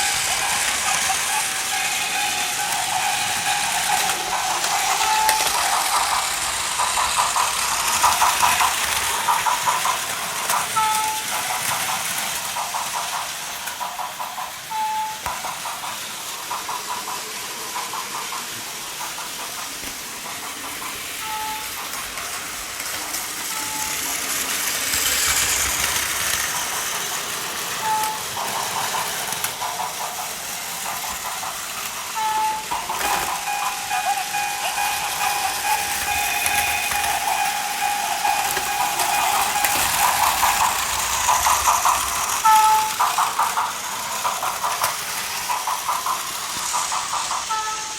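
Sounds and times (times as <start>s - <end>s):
toy train motors whirring: 0.0s - 47.9s.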